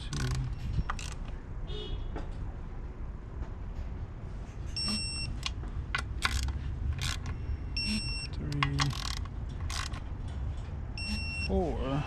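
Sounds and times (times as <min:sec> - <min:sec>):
short electronic beep: 0:04.8 - 0:05.3, 0:07.8 - 0:08.3, 0:11.0 - 0:11.6
sharp clicks: 0:04.8 - 0:10.7.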